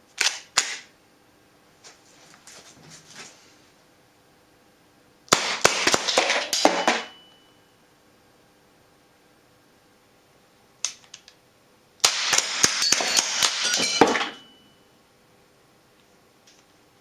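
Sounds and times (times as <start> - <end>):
toy gun firing caps: 0.2 - 0.9, 5.3 - 7.0, 12.0 - 14.2.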